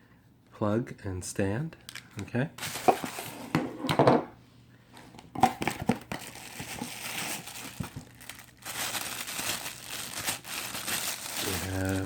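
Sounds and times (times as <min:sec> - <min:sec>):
plastic packaging crinkling: 0:02.6 - 0:03.3, 0:05.4 - 0:12.0.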